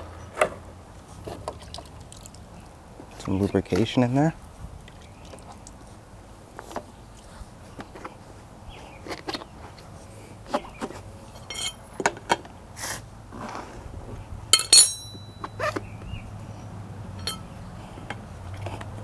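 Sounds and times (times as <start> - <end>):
metal tools clinking: 11.4 - 12.1, 14.5 - 15.8, 17.2 - 17.6.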